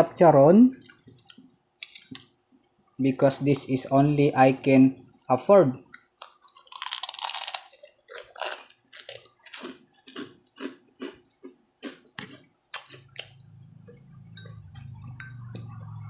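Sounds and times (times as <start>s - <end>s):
person chewing crispy food: 0.8s - 2.3s, 5.9s - 15.9s.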